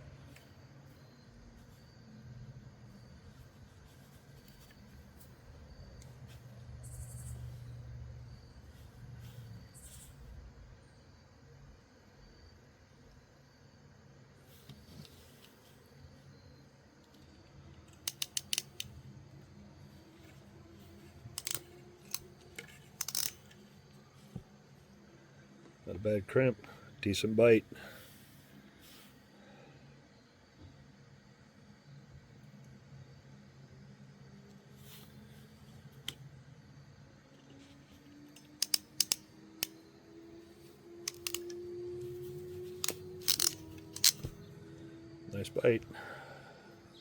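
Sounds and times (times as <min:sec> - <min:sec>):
faint steady hum: 0:00.0 - 0:47.0
wire crimper clicking: 0:17.9 - 0:18.9, 0:21.3 - 0:23.6, 0:38.3 - 0:39.8, 0:41.0 - 0:41.6, 0:42.4 - 0:44.4.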